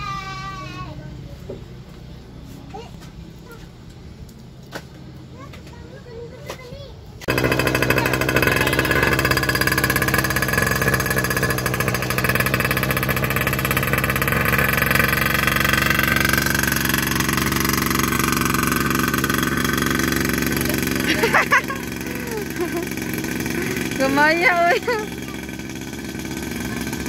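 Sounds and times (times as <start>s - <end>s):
small two-stroke engine running: 7.2s - 27.0s.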